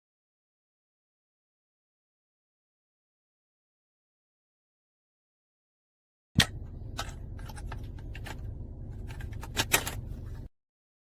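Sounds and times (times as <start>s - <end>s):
low rumble: 6.4s - 10.5s.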